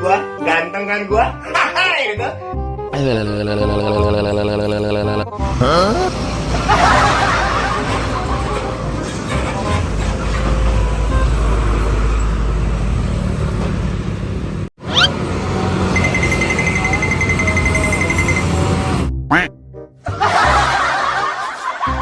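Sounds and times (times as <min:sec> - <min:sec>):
large vehicle engine running: 0:05.4 - 0:19.1
traffic noise: 0:05.4 - 0:19.1
steady high-pitched tone: 0:15.9 - 0:19.1.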